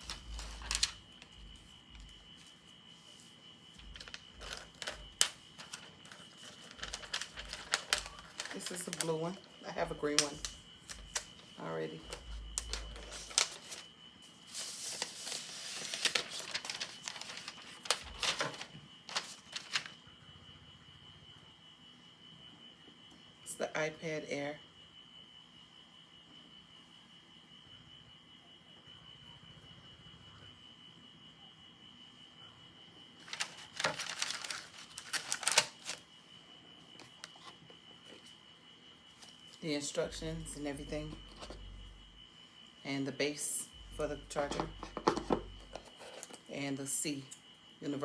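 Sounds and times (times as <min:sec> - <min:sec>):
cardboard packaging clicks and crackles: 0:00.0 - 0:02.2, 0:03.8 - 0:09.1, 0:10.2 - 0:11.5, 0:12.1 - 0:13.9, 0:14.5 - 0:20.0, 0:33.2 - 0:36.1
paper and plastic rustling: 0:00.0 - 0:09.2, 0:10.4 - 0:20.0, 0:33.2 - 0:36.1.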